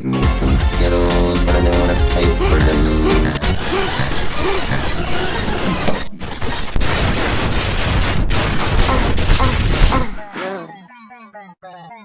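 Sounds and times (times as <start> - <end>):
harsh distorted crackling noise: 3.4 - 10.3
faint distorted voice: 8.8 - 12.0.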